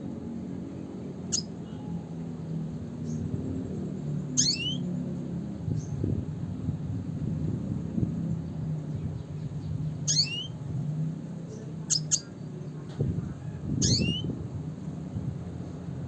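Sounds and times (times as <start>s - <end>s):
sharp bird chips: 1.2s - 1.6s, 4.3s - 4.9s, 10.0s - 10.6s, 11.5s - 12.4s, 13.8s - 14.3s.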